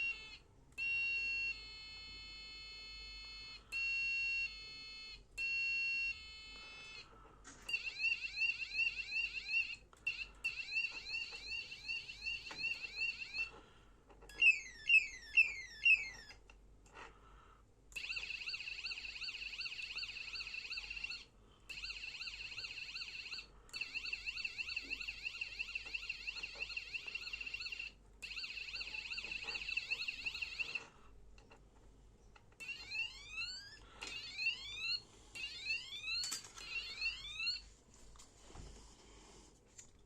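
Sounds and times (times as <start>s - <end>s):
electronic bike horn siren tones: 14.3s - 16.4s, 18.0s - 30.9s.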